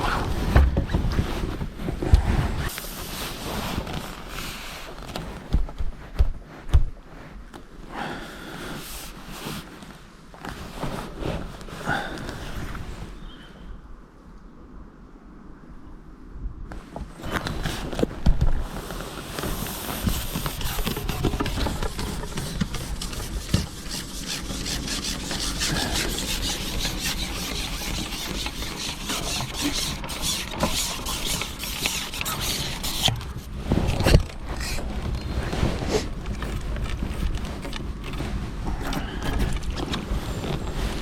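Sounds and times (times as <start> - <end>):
fishing gear rubbing and scraping: 17.2 - 41.0.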